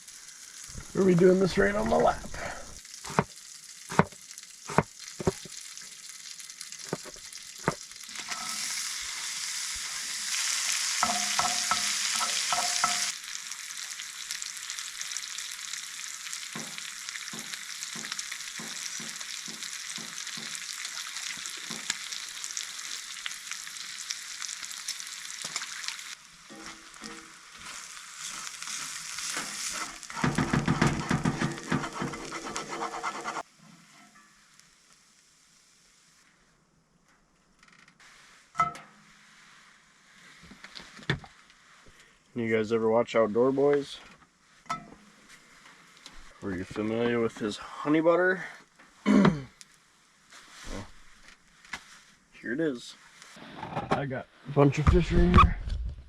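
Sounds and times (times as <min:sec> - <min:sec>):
food sizzling in a pan: 0:00.0 - 0:36.4, 0:38.0 - 0:41.9
utensil scraping a pan: 0:08.2 - 0:08.8, 0:11.0 - 0:13.1, 0:26.5 - 0:34.2.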